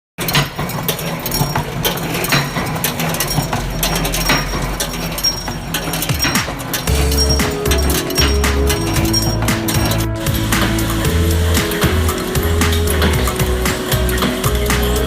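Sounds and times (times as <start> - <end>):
metallic clicks and clatter: 0.2 - 15.0
steady motor hum: 0.7 - 15.0.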